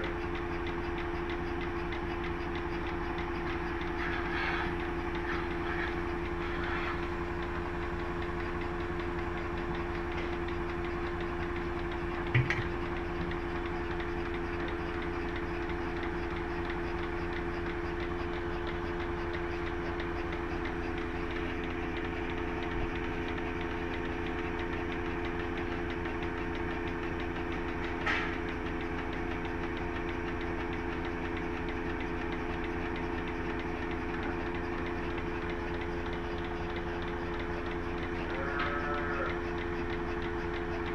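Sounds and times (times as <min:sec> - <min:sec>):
machine motor humming: 0:03.0 - 0:40.9
lower hum tone: 0:12.2 - 0:12.9
sharp knocks: 0:12.3 - 0:12.7.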